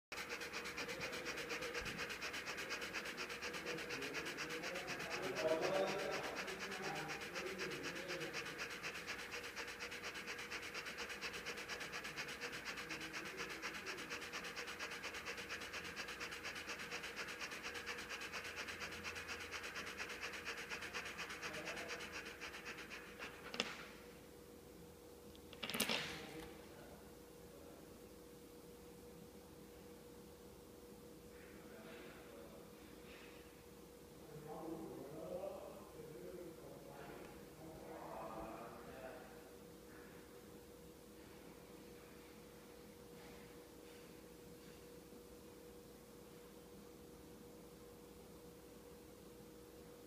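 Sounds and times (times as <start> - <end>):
dog panting hard: 0.1 - 23.9.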